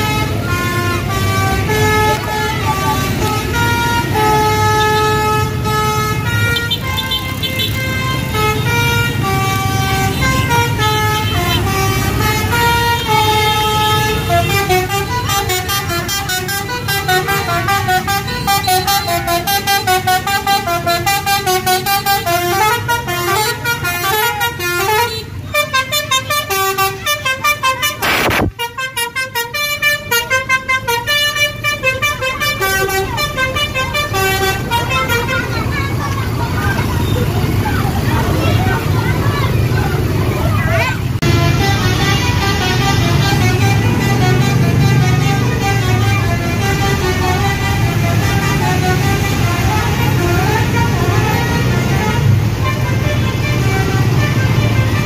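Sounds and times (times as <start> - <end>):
multi-tone bus horn playing a tune: 0.0 - 39.7, 41.1 - 55.0.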